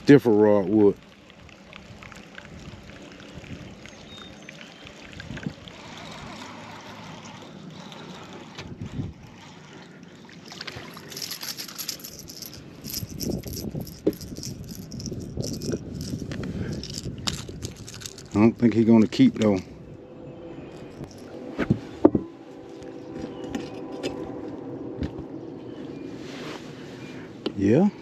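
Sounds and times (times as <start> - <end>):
water lapping around boat: 0.0 - 27.6.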